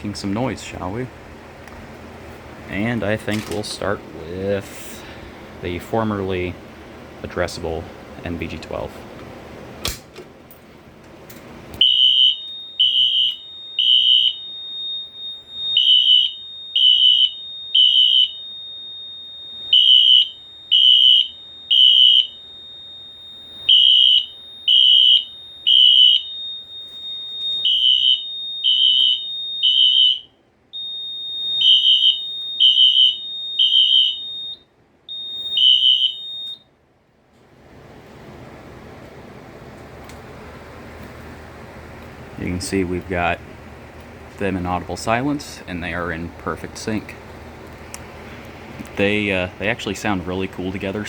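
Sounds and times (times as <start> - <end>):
fire alarm horns beeping: 11.8 - 36.8
clicks: 39.0 - 40.3.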